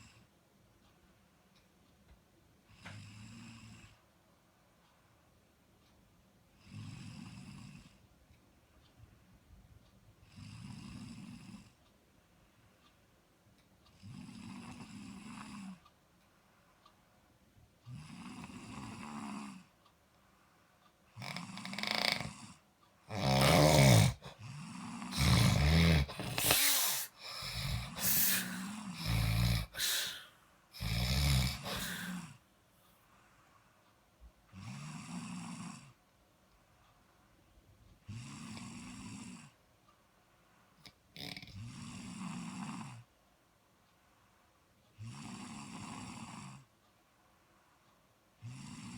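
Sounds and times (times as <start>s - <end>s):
person snoring: 21.2s - 32.4s.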